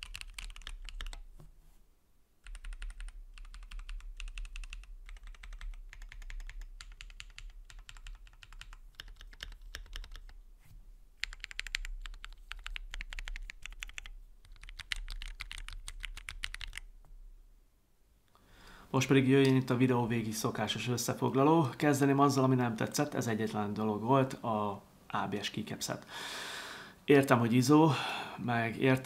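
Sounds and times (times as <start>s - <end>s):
mechanical keyboard typing: 0.0s - 1.2s, 2.4s - 10.4s, 11.2s - 16.9s.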